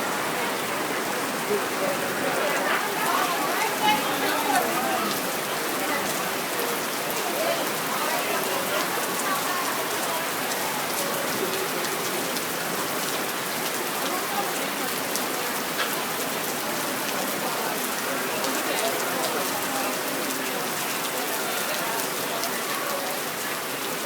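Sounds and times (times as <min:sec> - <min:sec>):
heavy rain pouring: 0:00.0 - 0:24.0
raindrops ticking on surfaces: 0:00.1 - 0:24.0.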